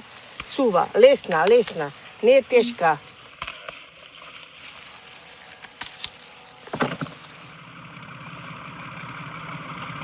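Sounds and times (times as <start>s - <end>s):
tractor engine throbbing: 4.9s - 10.0s.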